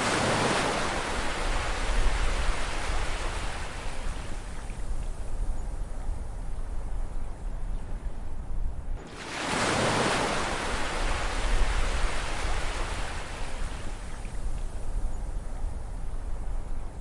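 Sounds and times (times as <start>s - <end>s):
low rumble of sea: 0.0s - 17.0s
wave breaking: 9.0s - 13.3s.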